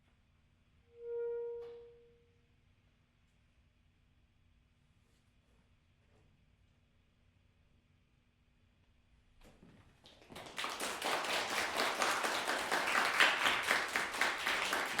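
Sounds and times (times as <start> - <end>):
audience applauding: 10.0 - 15.0.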